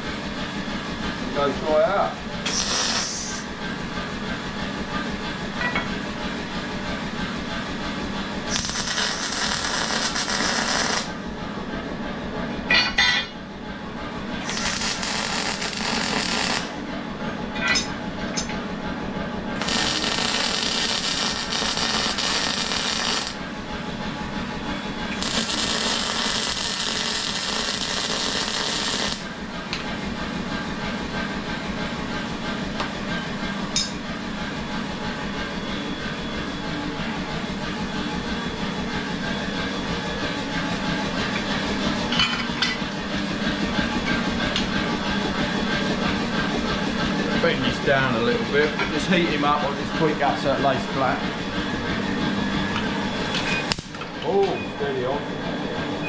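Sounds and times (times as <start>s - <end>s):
workshop hum: 0.0s - 56.0s
welding crackling: 2.5s - 3.4s, 8.5s - 11.2s, 14.4s - 16.8s, 19.6s - 23.4s, 25.1s - 29.2s.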